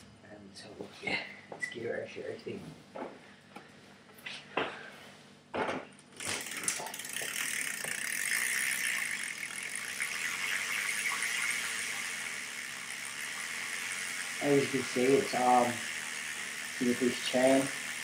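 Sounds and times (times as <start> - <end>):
bike wheel and chain spinning: 6.1 - 18.0.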